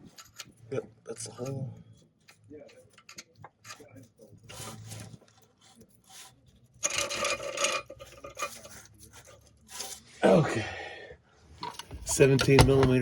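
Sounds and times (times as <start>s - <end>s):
hand tools scraping and rubbing: 2.2s - 10.2s.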